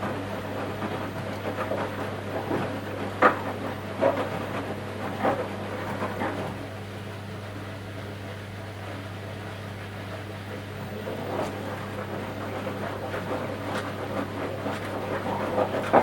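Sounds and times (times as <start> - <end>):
laundry sloshing in washing drum: 0.0 - 6.7, 9.9 - 16.0
washing machine low hum: 0.0 - 16.0.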